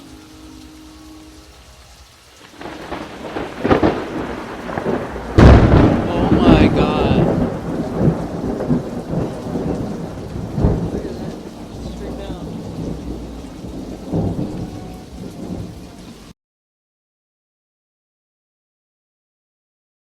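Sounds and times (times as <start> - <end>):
heavy rain: 0.0 - 16.4
thunder rumbling: 1.4 - 16.3.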